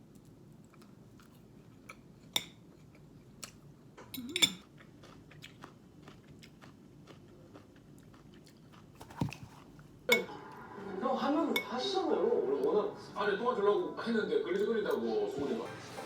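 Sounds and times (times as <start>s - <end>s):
cutlery and dishes clinking: 4.0s - 4.7s, 10.1s - 10.5s.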